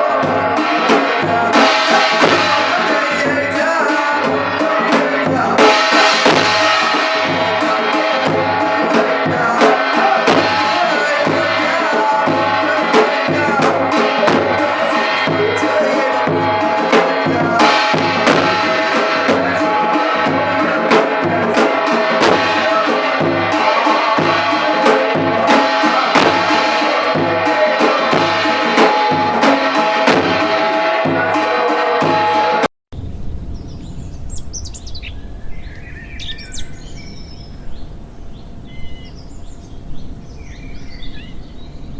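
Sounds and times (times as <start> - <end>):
rapid metallic gong strikes: 0.0 - 32.7
steady drum beat: 0.0 - 32.7
birds chirping: 33.0 - 41.9.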